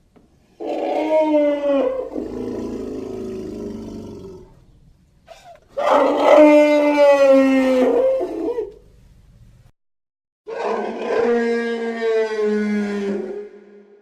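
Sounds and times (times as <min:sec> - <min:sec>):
monster roar: 0:10.5 - 0:13.8.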